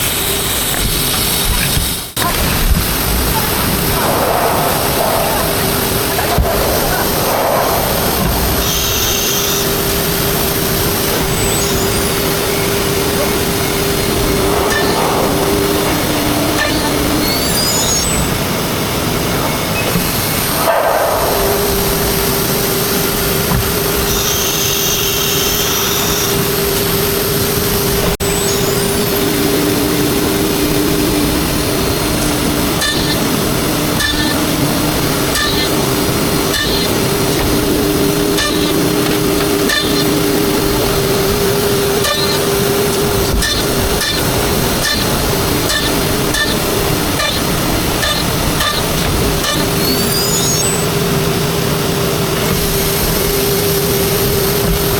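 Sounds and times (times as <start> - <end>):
router spindle running: 2.9 - 54.9.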